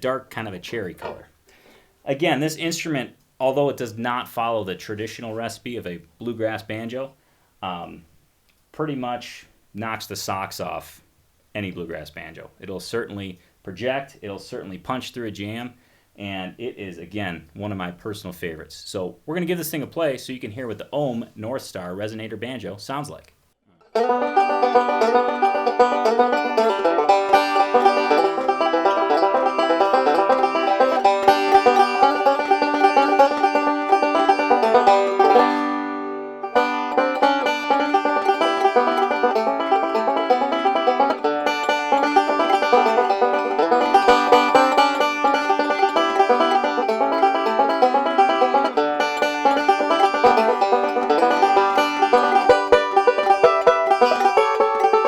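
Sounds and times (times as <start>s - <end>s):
banjo picking: 0.0s - 6.9s, 23.7s - 55.0s.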